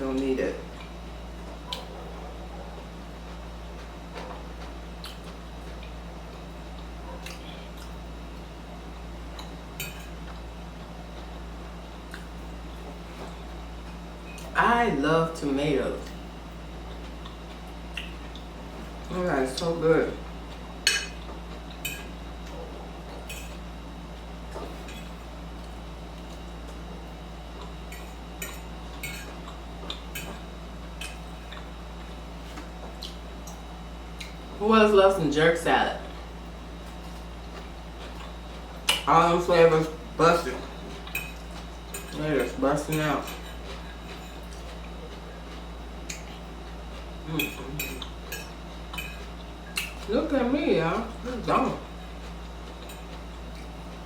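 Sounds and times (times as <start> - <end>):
steady low hum: 0.0 - 54.0
person chewing food: 0.7 - 14.6, 16.0 - 19.1, 20.2 - 34.5, 36.0 - 39.1, 40.7 - 42.2, 43.3 - 50.1, 51.9 - 54.0
mouth clicks and crunches: 4.6 - 8.1, 16.9 - 19.2, 32.5 - 34.5.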